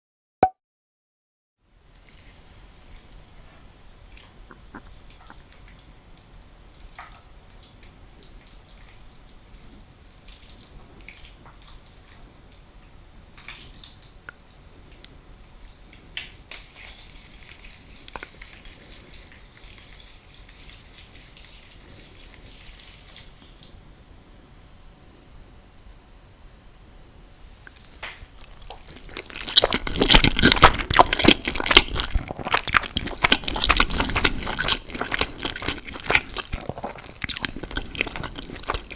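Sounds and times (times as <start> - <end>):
eating spaghetti: 1.9 - 12.7, 13.4 - 23.8, 27.6 - 38.9.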